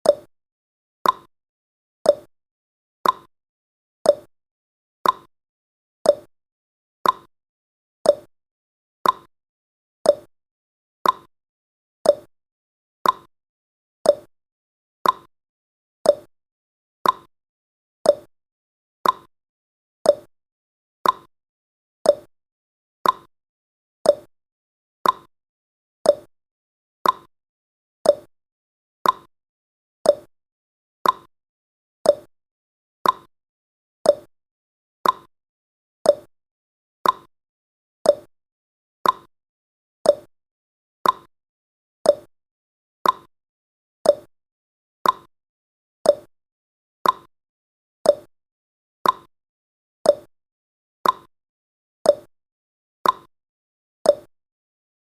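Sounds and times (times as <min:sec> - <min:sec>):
clock ticking: 0:33.0 - 0:33.3, 0:35.0 - 0:35.3, 0:37.0 - 0:37.3, 0:39.0 - 0:39.3, 0:41.0 - 0:41.3, 0:43.0 - 0:43.3, 0:45.0 - 0:45.3, 0:47.0 - 0:47.3, 0:49.0 - 0:49.3, 0:51.0 - 0:51.3.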